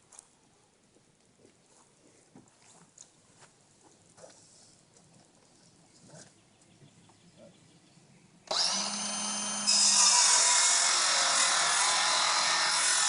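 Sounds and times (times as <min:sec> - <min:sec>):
power tool whining: 0:08.5 - 0:13.0.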